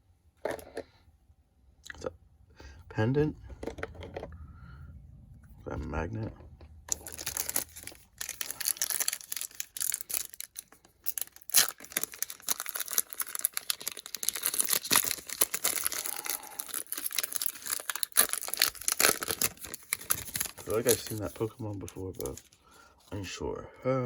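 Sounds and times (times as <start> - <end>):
foil wrapper crinkling and tearing: 6.9 - 22.6
cards being handled: 16.7 - 22.6.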